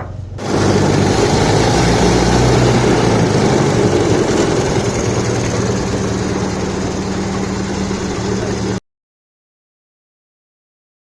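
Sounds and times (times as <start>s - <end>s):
car engine running: 0.4s - 8.8s.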